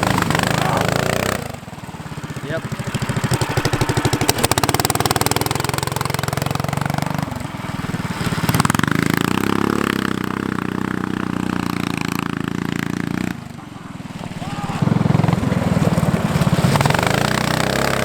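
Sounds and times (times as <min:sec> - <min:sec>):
small petrol engine revving: 0:00.0 - 0:18.0.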